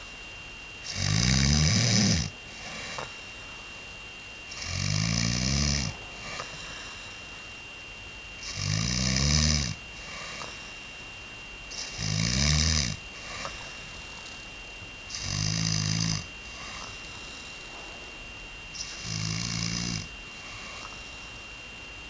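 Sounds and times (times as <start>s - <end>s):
man snoring: 0.8s - 3.1s, 4.5s - 7.2s, 8.4s - 10.8s, 11.7s - 14.4s, 15.1s - 17.8s, 18.8s - 21.3s.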